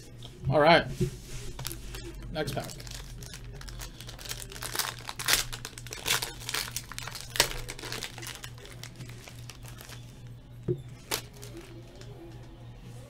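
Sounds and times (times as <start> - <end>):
card pack wrapper tearing: 2.6 - 10.2, 11.0 - 12.1.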